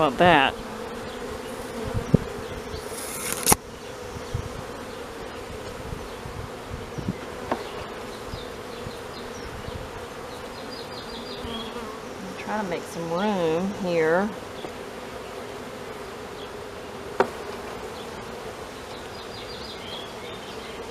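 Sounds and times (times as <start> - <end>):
honeybees buzzing: 0.0 - 20.9
clicks and knocks handling hive: 1.1 - 4.4, 7.0 - 11.0, 11.7 - 14.9, 17.1 - 19.4.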